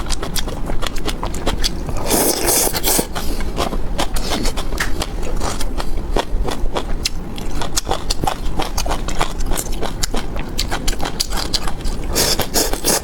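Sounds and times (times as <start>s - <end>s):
crunchy chewing: 0.0s - 13.0s.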